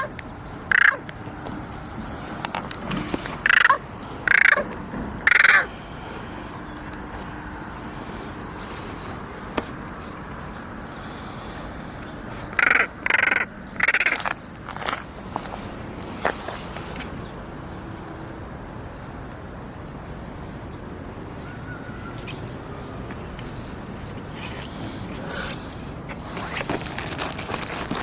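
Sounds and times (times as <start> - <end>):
crow begging calls: 0.0 - 1.1, 3.4 - 5.8, 12.4 - 14.9.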